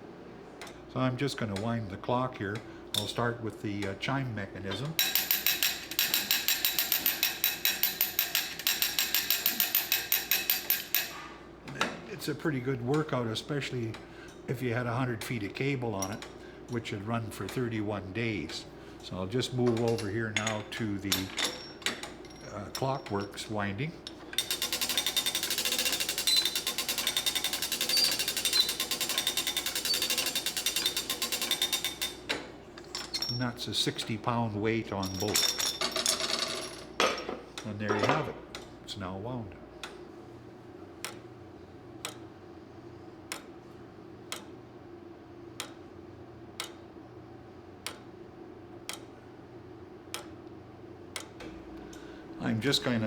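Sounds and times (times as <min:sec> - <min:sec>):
faint steady hum: 0:00.0 - 0:53.0
clock ratchet clicking: 0:05.0 - 0:11.2, 0:24.1 - 0:34.2, 0:41.0 - 0:41.2, 0:42.0 - 0:42.3, 0:43.3 - 0:43.5, 0:44.3 - 0:44.5, 0:45.6 - 0:45.8, 0:46.6 - 0:46.8, 0:47.8 - 0:48.1, 0:48.8 - 0:49.1, 0:50.1 - 0:50.3, 0:51.1 - 0:51.4.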